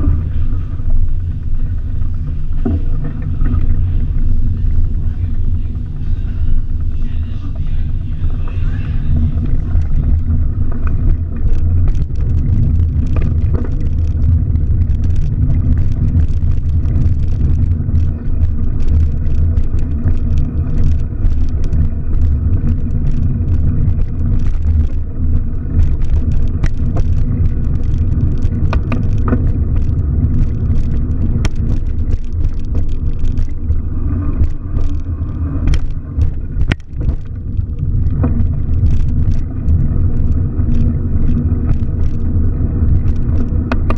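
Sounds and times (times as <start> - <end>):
car engine and road rumble: 0.0 - 43.9
small rattles and clicks: 0.0 - 43.9.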